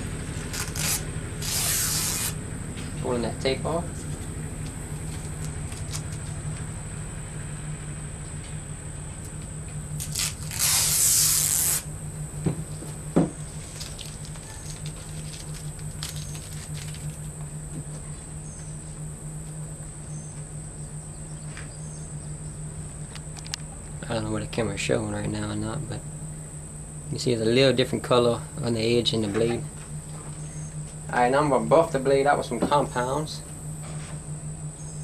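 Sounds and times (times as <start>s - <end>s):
steady low hum: 0.0s - 35.0s
tape ripping off: 0.4s - 2.4s, 10.0s - 11.9s, 13.7s - 17.2s.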